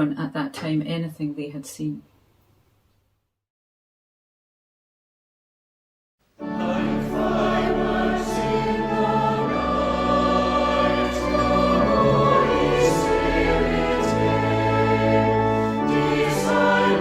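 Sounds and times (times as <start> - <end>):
bass accompaniment: 6.4 - 17.0
choir singing sustained chords: 6.4 - 17.0.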